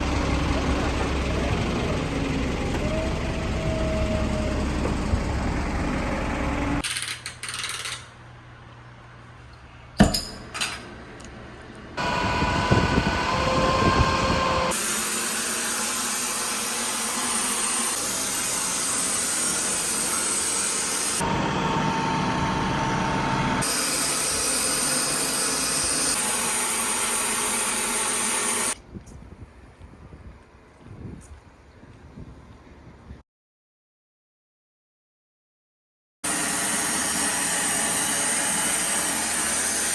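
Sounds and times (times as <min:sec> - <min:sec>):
power tools running: 0:00.0 - 0:06.9, 0:12.0 - 0:28.8, 0:36.2 - 0:39.9.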